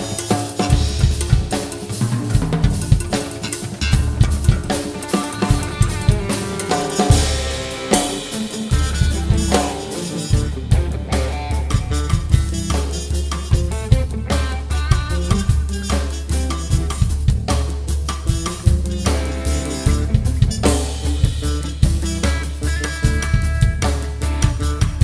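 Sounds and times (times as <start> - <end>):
drum kit playing: 0.0 - 25.0
sustained pitched accompaniment: 3.2 - 12.8.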